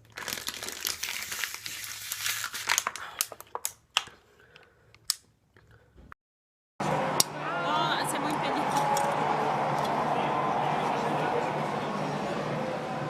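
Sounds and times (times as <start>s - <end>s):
plastic water bottle crinkling: 0.0s - 4.2s.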